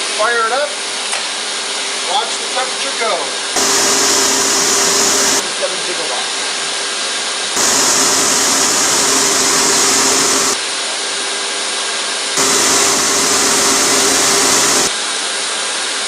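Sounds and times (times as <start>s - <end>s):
hot-air blower rushing air: 3.5s - 5.5s, 7.6s - 10.6s, 12.4s - 14.9s.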